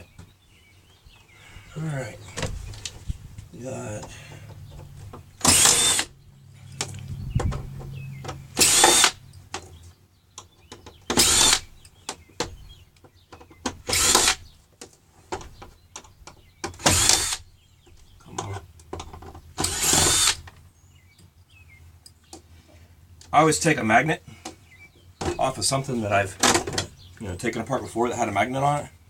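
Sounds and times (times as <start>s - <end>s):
power drill whirring: 5.4s - 6.1s, 8.5s - 9.2s, 11.1s - 11.7s, 13.8s - 14.4s, 16.8s - 17.4s, 19.6s - 20.4s.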